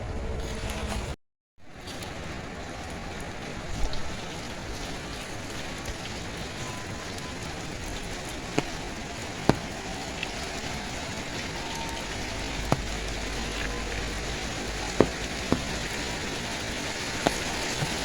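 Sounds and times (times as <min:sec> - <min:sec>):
heavy rain: 0:01.7 - 0:18.0
sharp taps: 0:09.5 - 0:09.8, 0:12.5 - 0:16.4.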